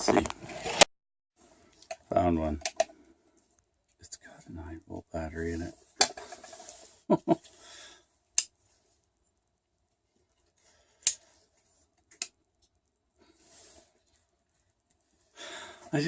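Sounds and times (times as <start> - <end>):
faint handling noise: 5.4 - 7.5.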